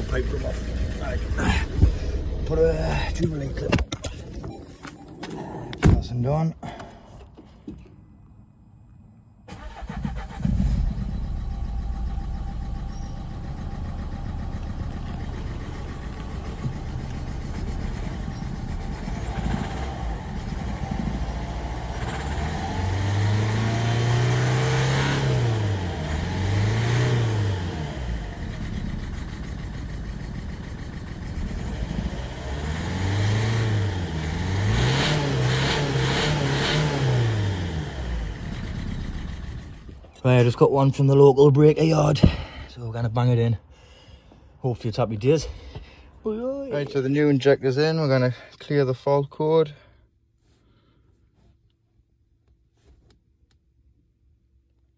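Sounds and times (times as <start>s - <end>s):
diesel engine idling and revving: 0.0s - 6.1s, 9.4s - 43.2s
engine cranking and starting: 9.4s - 21.2s.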